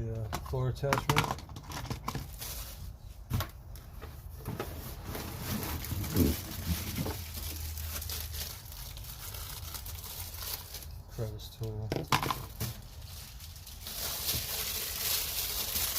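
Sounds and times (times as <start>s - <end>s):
plastic parts knocking: 0.2s - 2.3s, 11.9s - 12.7s
packaging rustling: 4.8s - 11.0s, 12.2s - 15.9s.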